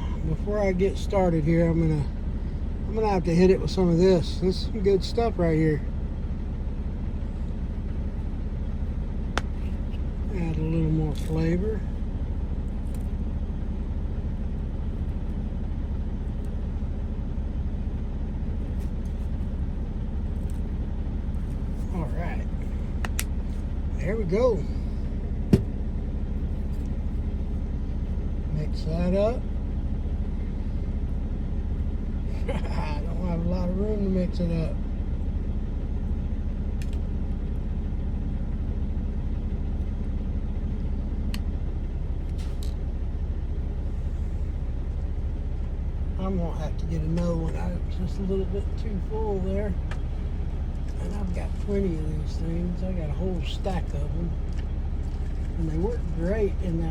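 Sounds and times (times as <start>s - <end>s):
truck engine idling: 0.0s - 56.9s.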